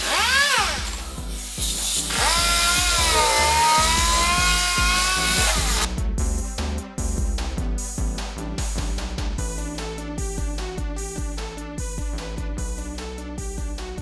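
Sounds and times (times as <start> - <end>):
power tool whine: 0.0 - 1.3, 2.0 - 5.9
background music with beat: 0.0 - 14.0.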